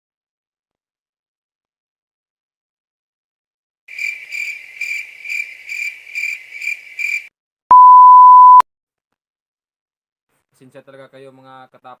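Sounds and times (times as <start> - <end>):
cricket chirping: 3.9 - 7.3
censor bleep tone: 7.7 - 8.6.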